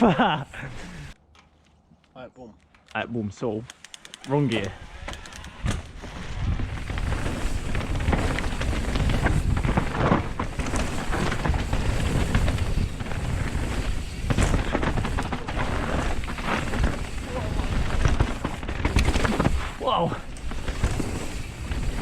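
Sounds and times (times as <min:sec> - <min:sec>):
bike knocks and rattles: 0:05.6 - 0:22.0.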